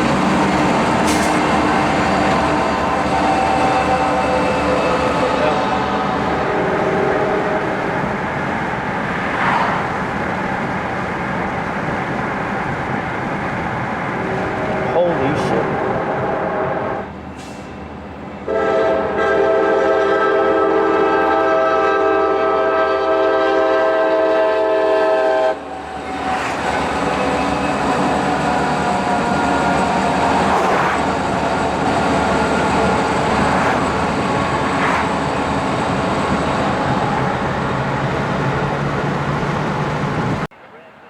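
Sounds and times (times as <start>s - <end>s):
diesel locomotive engines running: 0.0s - 9.1s, 9.8s - 40.6s
locomotive horn long blast: 2.8s - 7.7s, 18.5s - 25.8s.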